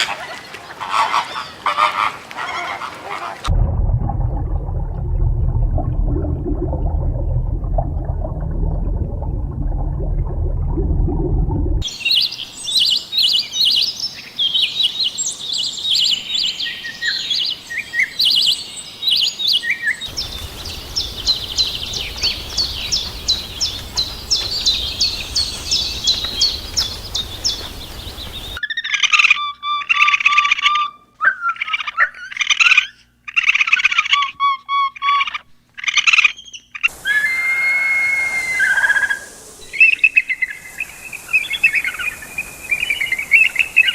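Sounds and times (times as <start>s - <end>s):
low dense sound: 3.5s - 11.8s
small birds chirping: 11.9s - 28.6s, 38.5s - 43.9s
whistled bird calls: 19.8s - 28.6s, 36.4s - 43.9s.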